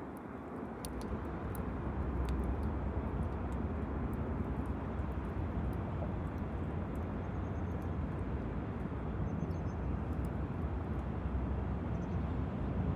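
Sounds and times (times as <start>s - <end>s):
campfire crackling: 0.0s - 7.2s.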